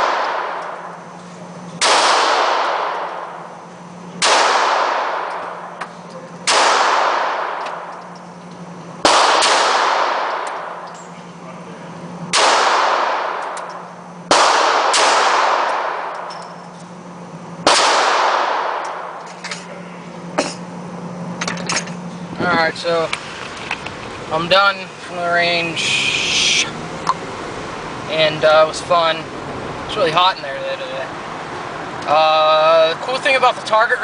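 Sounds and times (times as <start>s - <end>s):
pistol shots ringing out: 0.0s - 1.0s, 1.8s - 3.4s, 4.2s - 5.7s, 6.4s - 8.1s, 9.0s - 10.8s, 12.3s - 16.4s, 17.6s - 19.2s
steady low hum: 0.0s - 34.0s.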